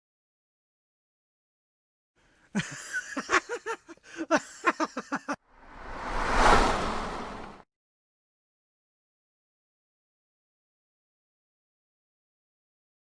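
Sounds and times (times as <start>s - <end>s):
cartoon whoosh: 5.6s - 7.6s.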